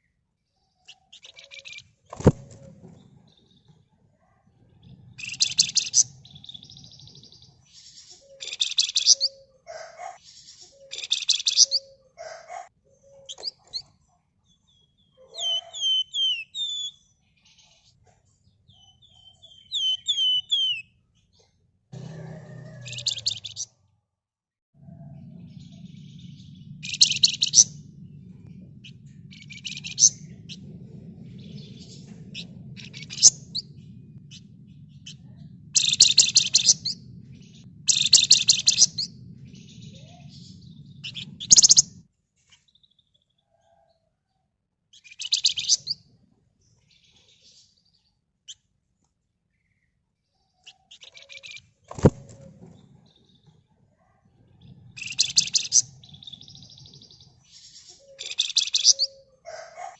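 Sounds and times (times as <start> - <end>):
steady low hum: 24.8 - 42.1.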